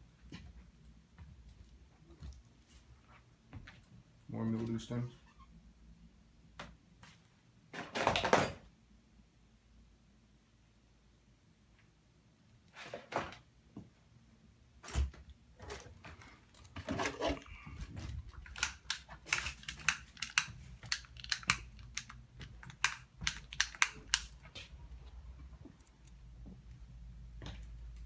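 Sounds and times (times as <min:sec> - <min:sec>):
sharp clicks and taps: 0:18.5 - 0:24.6.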